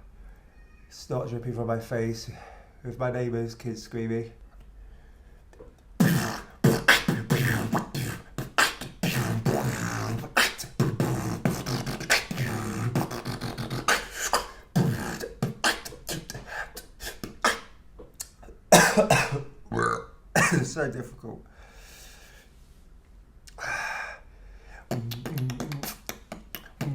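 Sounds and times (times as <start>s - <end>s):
human beatboxing: 5.6s - 19.2s, 24.8s - 26.9s.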